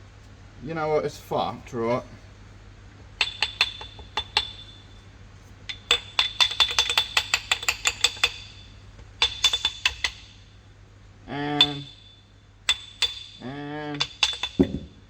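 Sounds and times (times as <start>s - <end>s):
ringing metal-on-metal taps: 3.2s - 5.0s, 5.7s - 10.3s, 11.6s - 13.4s, 14.0s - 15.0s.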